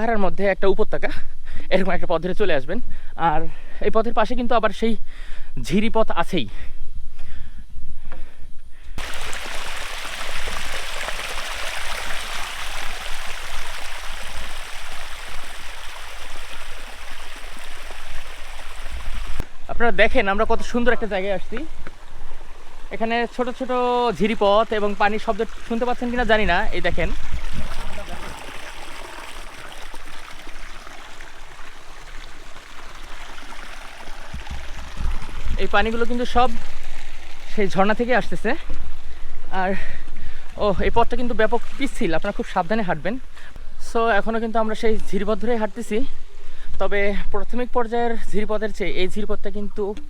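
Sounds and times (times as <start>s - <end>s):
stream flowing: 9.0s - 19.6s, 20.7s - 39.5s, 40.1s - 43.5s.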